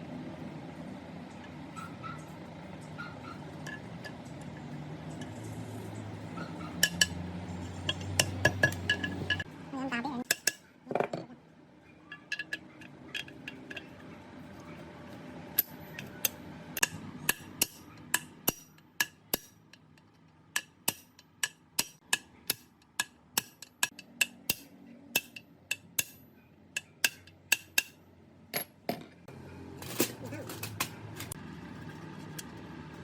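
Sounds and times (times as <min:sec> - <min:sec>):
metal striking metal: 0:20.6 - 0:26.2.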